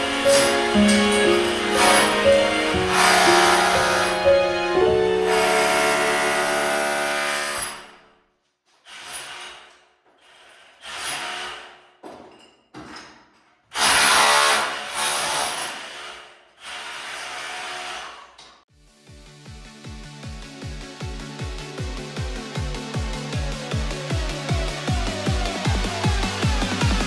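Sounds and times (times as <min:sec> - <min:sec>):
background music: 0:00.0 - 0:07.8, 0:18.7 - 0:27.0
power tool chipping tiles: 0:05.2 - 0:07.9, 0:08.8 - 0:12.2, 0:13.7 - 0:18.4.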